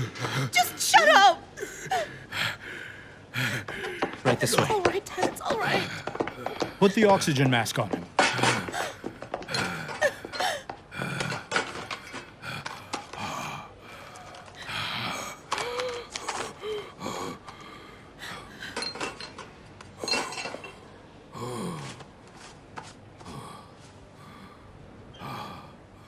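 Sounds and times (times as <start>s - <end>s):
gasping breaths: 0.0s - 0.6s, 1.6s - 7.1s, 8.2s - 22.2s, 23.2s - 26.0s
clinks and knocks of handling: 18.7s - 20.8s.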